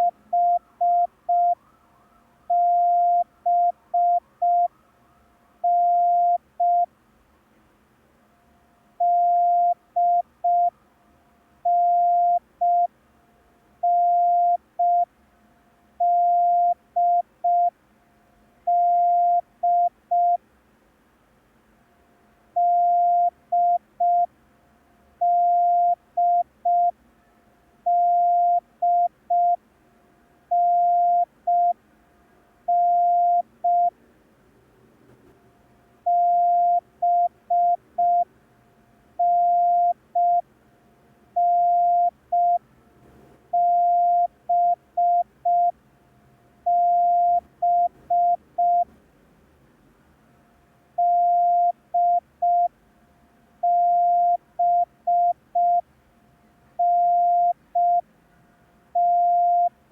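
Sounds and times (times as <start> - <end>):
morse code tone: 0.0 - 1.6, 2.5 - 4.7, 5.6 - 6.9, 9.0 - 10.7, 22.6 - 24.3, 25.2 - 26.9, 27.9 - 29.6, 30.5 - 31.8, 32.7 - 33.9, 36.1 - 38.3, 39.2 - 40.4, 41.4 - 42.6, 43.5 - 45.7, 46.7 - 48.9, 51.0 - 52.7, 53.6 - 55.8, 56.8 - 58.0, 59.0 - 59.7.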